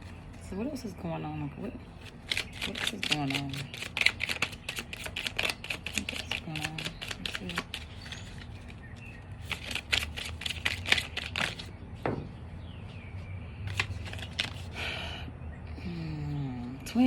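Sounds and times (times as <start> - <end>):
cards being shuffled: 2.0 - 11.7, 13.7 - 14.8
cards rustling: 2.0 - 11.7, 13.7 - 14.8.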